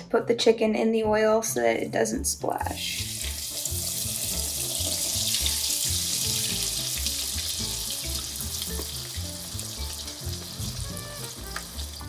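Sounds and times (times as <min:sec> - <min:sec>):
background music with beat: 0:02.2 - 0:12.0
food sizzling in hot oil: 0:02.6 - 0:12.0.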